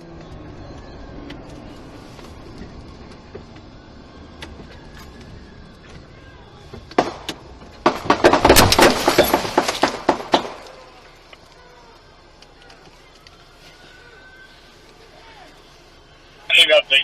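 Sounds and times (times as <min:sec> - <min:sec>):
rapid knocking and clatter: 0:07.0 - 0:10.7.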